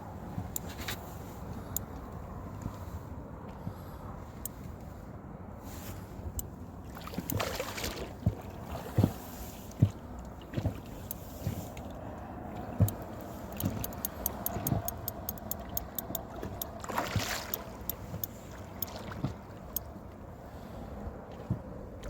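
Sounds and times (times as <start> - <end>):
water sloshing against boat: 0.0 - 22.0
water splash: 6.8 - 11.0, 15.6 - 19.6
light clicks: 11.0 - 19.0.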